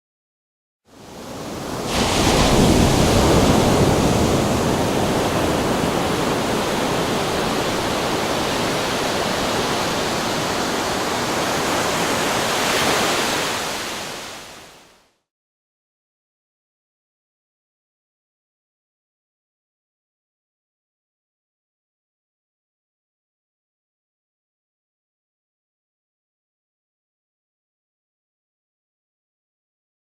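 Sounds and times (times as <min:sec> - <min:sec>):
ocean waves: 0:00.9 - 0:15.1.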